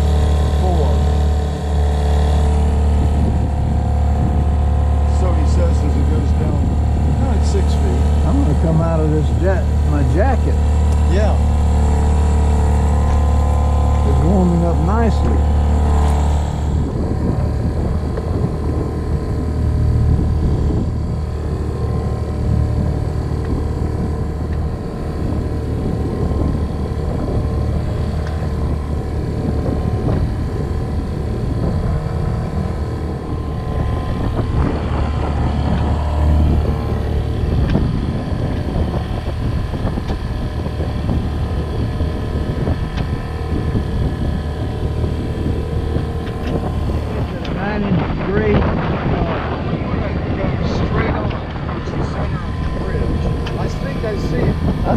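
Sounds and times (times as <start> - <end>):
boat engine rumbling: 0.0 - 54.9.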